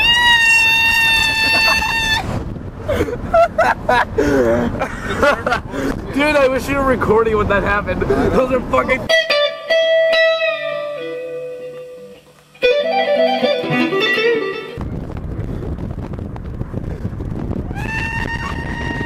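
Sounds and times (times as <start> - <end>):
tapped electric guitar notes: 9.1 - 15.2
steady rushing noise: 12.9 - 19.0.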